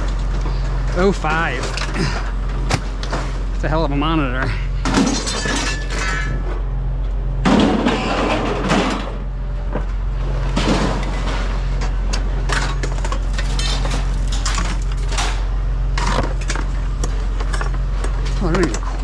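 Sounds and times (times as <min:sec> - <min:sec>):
steady low hum: 0:00.0 - 0:19.0
scrap items clattering: 0:04.8 - 0:06.6, 0:10.4 - 0:19.0.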